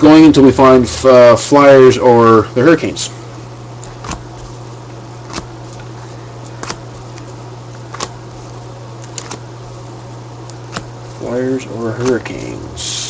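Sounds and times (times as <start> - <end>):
steady low hum: 0.0 - 13.0
cards snapping off a deck: 5.3 - 5.9, 6.5 - 7.3, 7.9 - 8.2, 9.0 - 9.5, 12.0 - 12.3.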